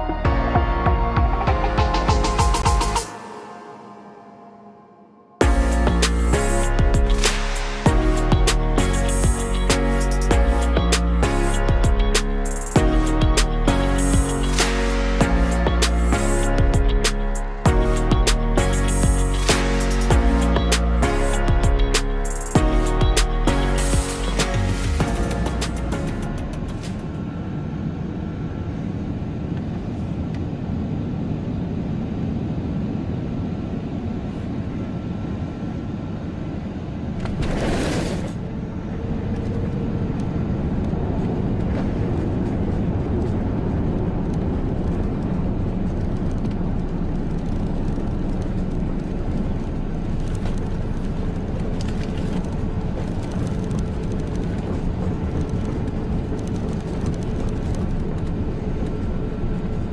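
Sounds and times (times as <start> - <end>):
loud rushing noise: 1.1 - 29.5
aircraft cabin engine rumble: 25.6 - 59.9.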